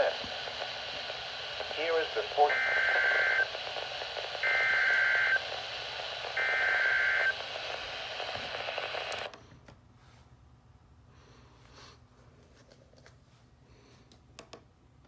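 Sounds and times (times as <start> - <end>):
radio static: 0.0 - 9.3.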